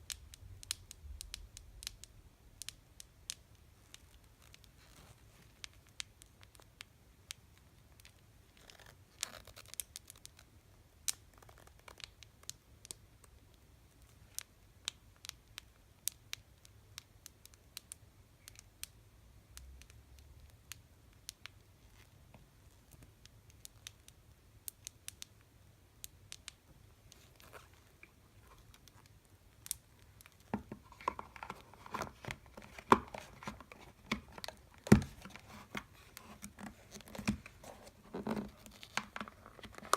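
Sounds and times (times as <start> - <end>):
box handling noise: 30.4 - 39.9.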